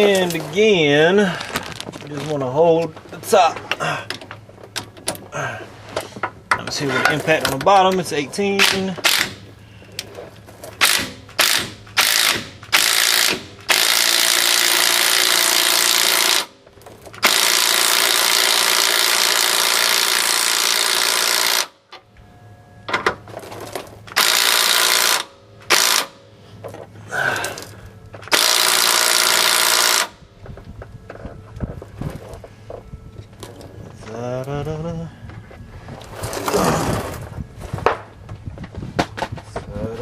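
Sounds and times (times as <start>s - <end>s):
impact wrench hammering: 8.6s - 9.5s, 10.8s - 16.5s, 17.2s - 21.8s, 24.1s - 26.2s, 28.2s - 30.2s.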